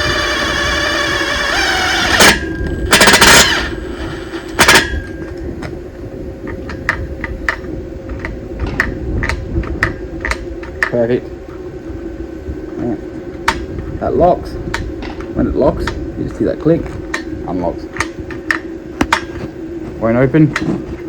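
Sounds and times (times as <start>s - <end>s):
cordless drill driving screw: 0.0s - 4.8s.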